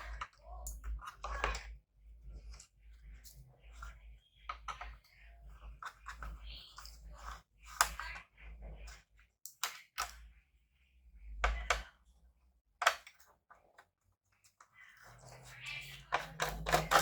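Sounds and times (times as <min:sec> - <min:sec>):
clicks of small laptop parts: 0:09.4 - 0:10.3, 0:12.8 - 0:13.3.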